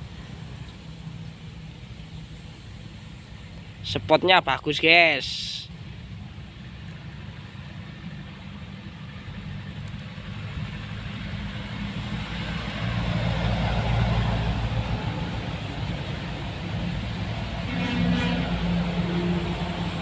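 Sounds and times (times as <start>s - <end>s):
road traffic passing: 0.0s - 20.0s
vehicle passing close: 10.2s - 20.0s.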